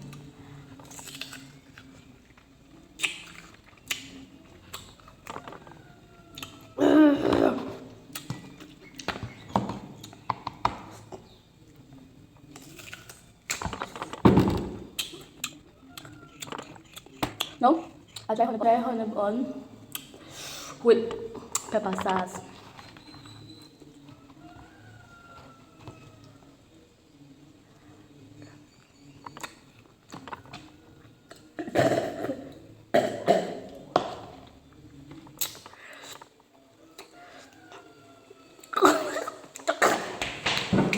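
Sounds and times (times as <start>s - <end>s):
person coughing hard: 6.8s - 7.7s, 31.6s - 33.6s.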